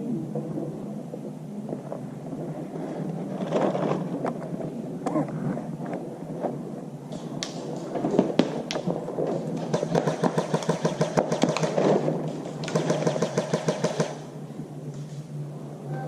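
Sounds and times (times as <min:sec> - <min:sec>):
airsoft gun firing: 0:09.6 - 0:14.3.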